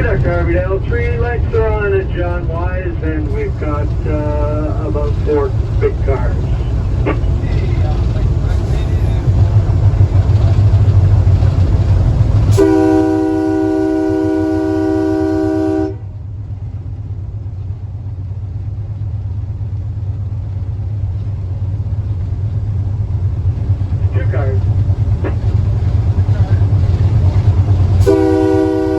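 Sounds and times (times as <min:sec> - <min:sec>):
train rumbling on rails: 0:00.0 - 0:28.9
train horn blast: 0:12.5 - 0:16.1, 0:28.0 - 0:28.9.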